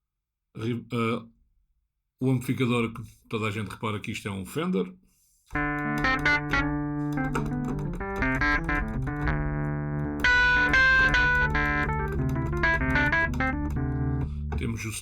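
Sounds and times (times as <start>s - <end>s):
electric piano playing: 5.6s - 14.6s.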